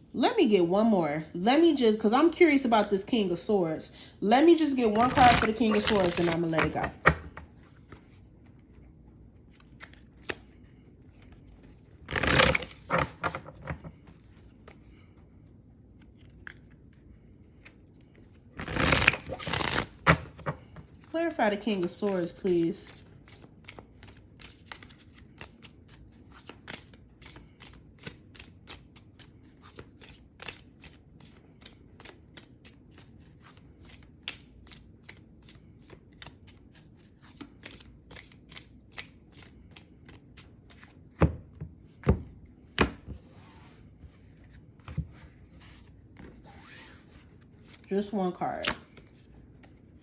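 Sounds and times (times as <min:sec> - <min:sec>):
cards being shuffled: 0:04.9 - 0:08.8, 0:09.4 - 0:15.1, 0:15.9 - 0:41.0.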